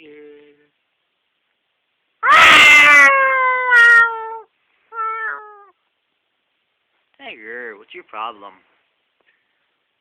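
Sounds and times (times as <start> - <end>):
cat meowing loudly: 2.2 - 5.8.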